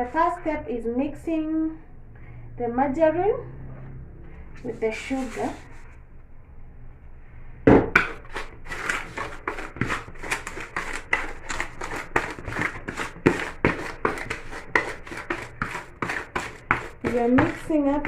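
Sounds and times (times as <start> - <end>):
utensil scraping a bowl: 4.6 - 5.9, 8.0 - 18.0.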